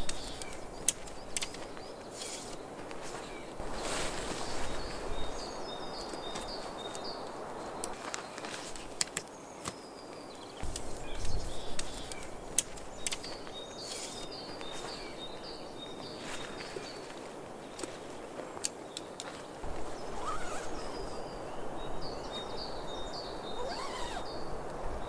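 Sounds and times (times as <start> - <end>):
light clicks: 0.0 - 3.0, 10.6 - 14.3
bird chirping: 0.0 - 17.1, 17.7 - 25.0.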